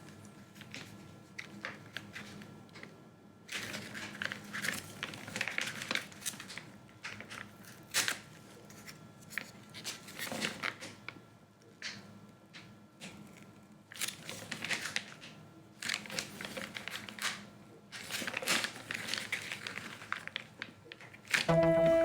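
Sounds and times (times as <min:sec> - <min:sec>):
packaging crinkling and tearing: 0:03.5 - 0:10.9, 0:13.9 - 0:17.4, 0:18.0 - 0:21.5.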